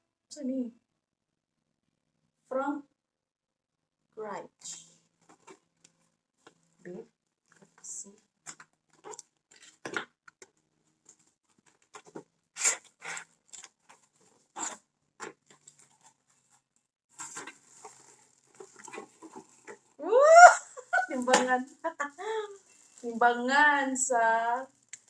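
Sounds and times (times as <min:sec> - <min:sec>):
gift wrapping tearing and rustling: 0:11.5 - 0:16.5, 0:17.1 - 0:23.3.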